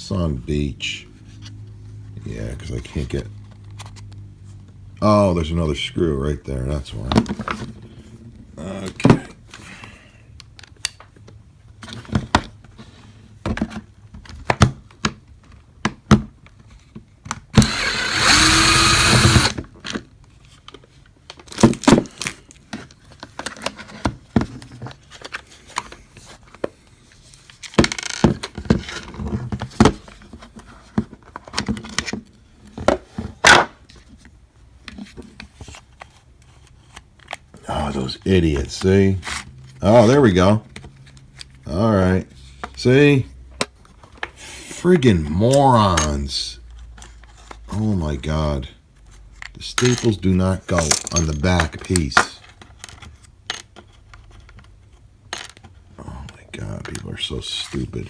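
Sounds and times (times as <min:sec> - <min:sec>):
small electric motor running: 0:17.6 - 0:19.6.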